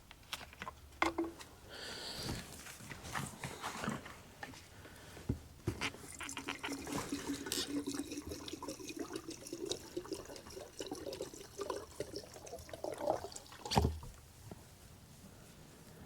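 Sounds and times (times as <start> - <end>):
liquid pouring trickle: 6.1 - 14.0.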